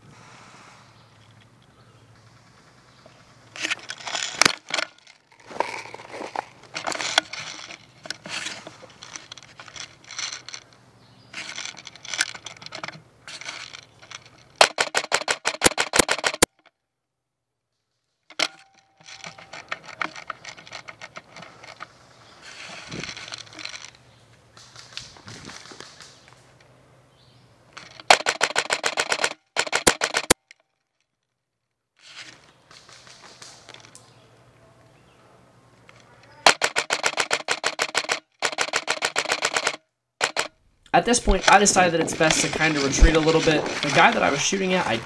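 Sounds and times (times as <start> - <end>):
airsoft gun rapid burst: 14.6 - 16.4, 28.1 - 30.4, 36.4 - 40.5
dry leaves rustling and crackling: 41.0 - 45.0.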